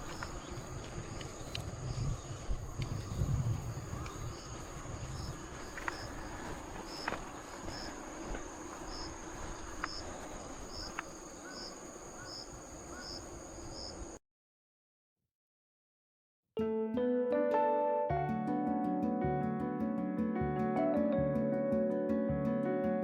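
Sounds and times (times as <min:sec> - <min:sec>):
insect chirping: 0:00.0 - 0:14.2.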